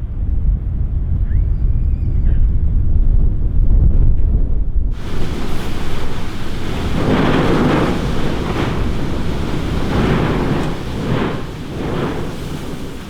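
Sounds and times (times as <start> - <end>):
wind buffeting microphone: 2.6 - 13.0.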